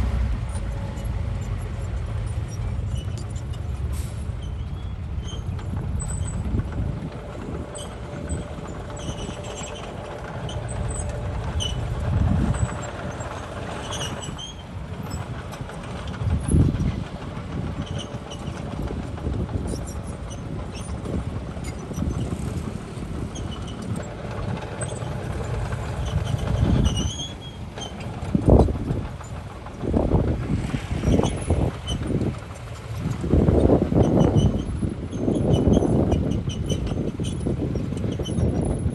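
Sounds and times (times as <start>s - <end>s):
heavy diesel machinery running: 0.0s - 38.9s
faint high squeaks: 0.5s - 6.4s, 12.5s - 15.2s, 26.0s - 28.2s.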